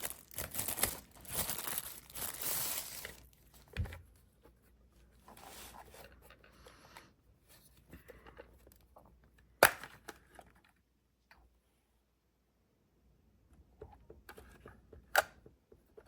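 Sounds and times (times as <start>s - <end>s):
rustling and handling noises: 0.0s - 11.8s.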